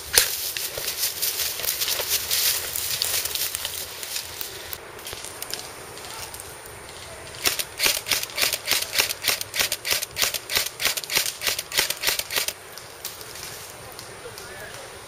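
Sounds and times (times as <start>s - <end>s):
airsoft gun firing: 7.4s - 12.6s.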